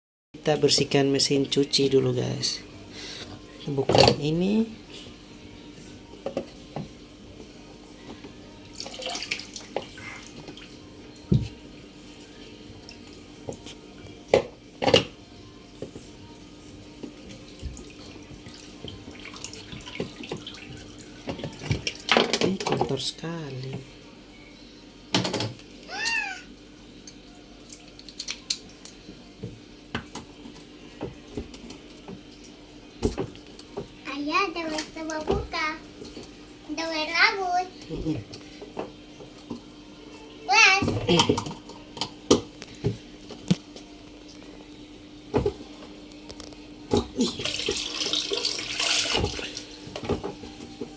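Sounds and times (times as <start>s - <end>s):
water running and splashing: 8.8s - 10.8s, 17.4s - 22.2s, 47.0s - 50.2s.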